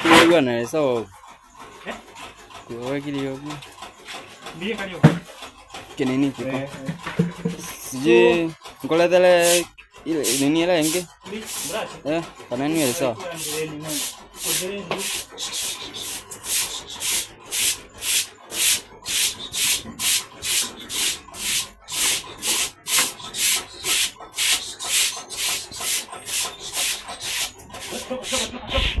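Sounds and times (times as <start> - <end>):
broom scrubbing wet floor: 0.0 - 0.4, 9.3 - 29.0.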